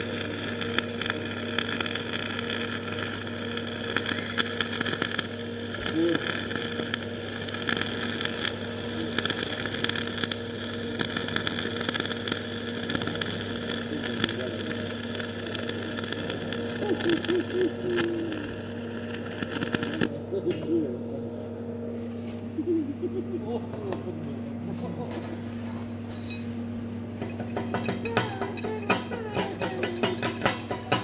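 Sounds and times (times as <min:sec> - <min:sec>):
welding arc crackling buzz: 0:00.0 - 0:20.1, 0:27.1 - 0:31.0
electrical hum: 0:00.0 - 0:31.0.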